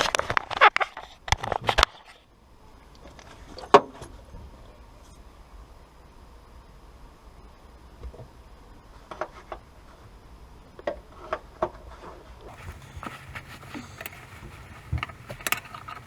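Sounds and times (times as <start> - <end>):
hand tools and bolts clinking: 12.5 - 16.0.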